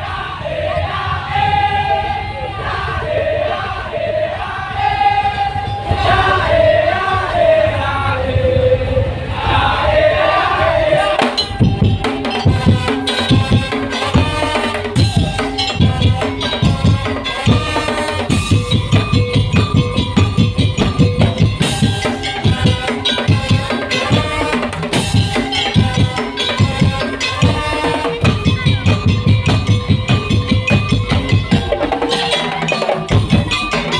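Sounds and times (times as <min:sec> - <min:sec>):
chanted vocal phrase: 0:00.0 - 0:14.2
wooden slit drums and drums: 0:10.9 - 0:33.9.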